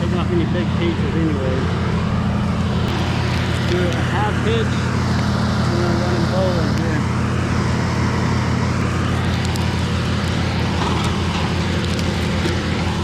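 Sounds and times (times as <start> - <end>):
chainsaw engine idling: 2.6 - 13.0.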